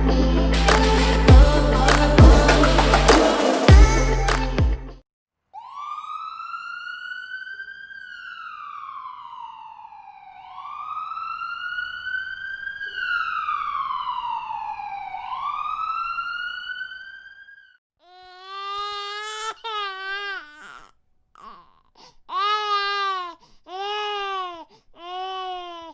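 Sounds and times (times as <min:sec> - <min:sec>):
emergency vehicle wail siren: 0:05.6 - 0:17.6.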